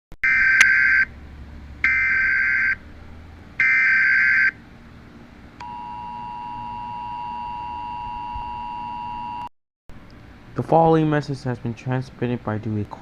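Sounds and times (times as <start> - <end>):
two-tone attention signal: 5.6 - 9.5.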